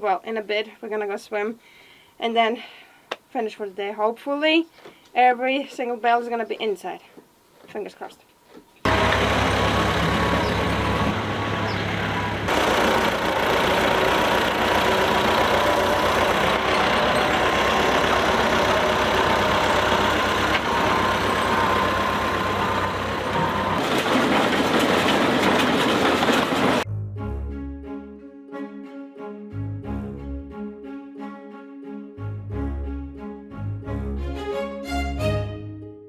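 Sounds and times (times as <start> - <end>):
tractor engine running: 8.9 - 26.9.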